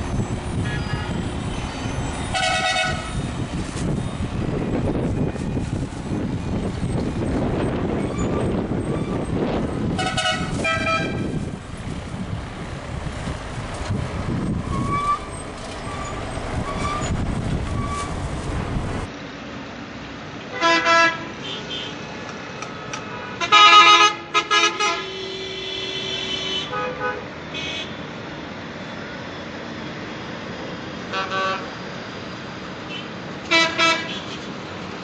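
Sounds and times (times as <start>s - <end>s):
wind buffeting microphone: 0.0s - 19.1s
bus engines rumbling: 0.0s - 35.0s
traffic: 0.0s - 35.0s
bus horn blasts: 2.3s - 3.1s, 9.9s - 11.4s, 20.5s - 22.0s, 23.1s - 28.0s, 31.1s - 31.7s, 32.9s - 34.3s.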